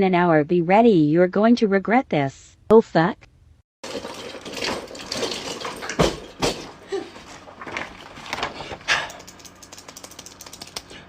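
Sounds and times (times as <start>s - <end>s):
fast small clicks: 9.0s - 11.0s.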